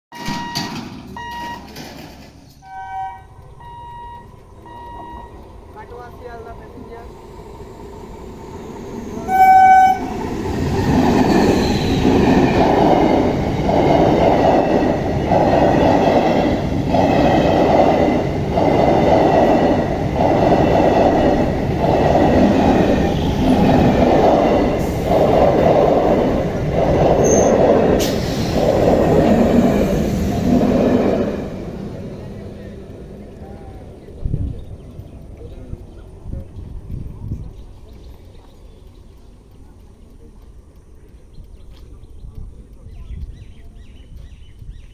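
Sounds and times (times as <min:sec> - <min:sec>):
train rumbling past: 0:00.1 - 0:44.9
train horn blast: 0:02.6 - 0:04.2, 0:09.2 - 0:10.3.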